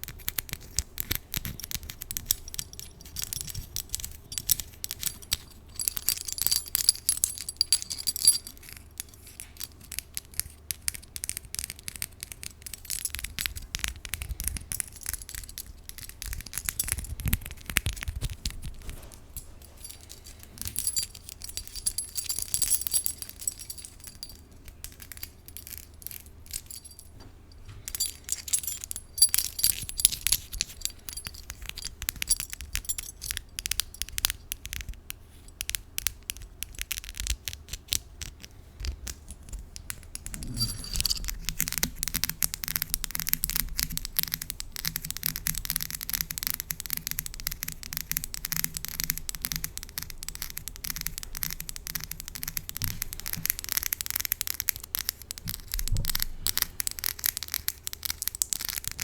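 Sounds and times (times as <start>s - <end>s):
fingernails clicking on metal key: 0.0s - 59.0s
metallic jingling: 1.9s - 9.4s, 18.9s - 33.5s, 40.2s - 41.8s.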